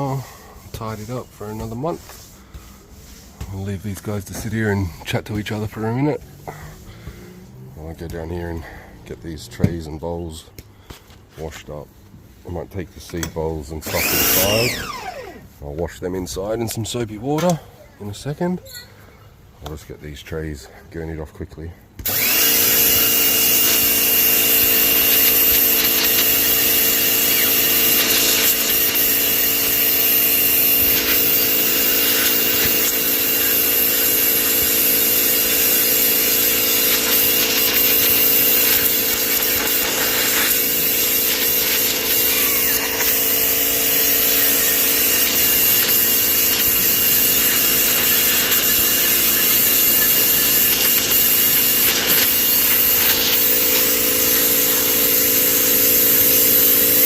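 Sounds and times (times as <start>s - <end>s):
pressure washer motor hum: 13.8s - 15.5s, 22.0s - 57.0s
water jet hissing: 22.2s - 57.0s.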